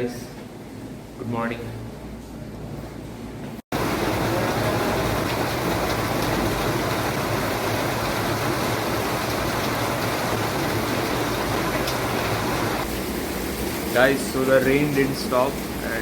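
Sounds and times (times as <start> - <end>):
steady rain falling: 3.7 - 16.0.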